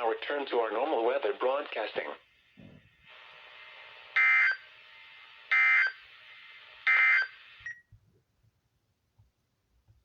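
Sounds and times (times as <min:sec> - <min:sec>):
radio hiss: 0:00.0 - 0:07.6.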